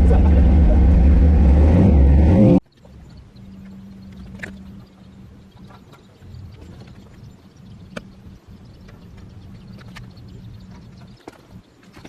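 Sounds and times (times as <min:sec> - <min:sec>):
loud vehicle running: 0:00.0 - 0:02.6
steady low hum: 0:00.0 - 0:12.0.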